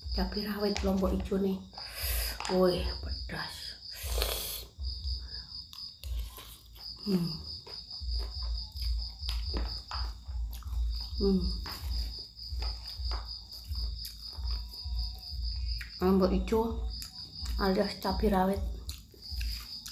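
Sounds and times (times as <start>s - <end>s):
chewing and slurping noodles: 5.7s - 15.3s, 18.7s - 19.9s.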